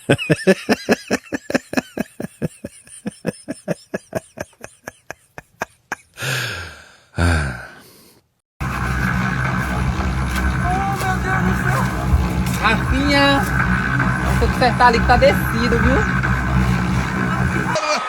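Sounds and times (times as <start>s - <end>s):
person laughing hard: 0.0s - 6.3s, 17.8s - 18.0s
long drawn breaths: 6.1s - 8.3s.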